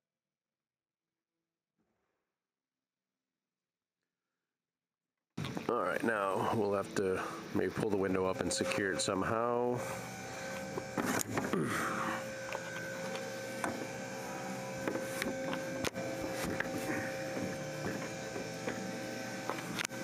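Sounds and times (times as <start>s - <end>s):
steady electrical hum: 5.4s - 20.0s.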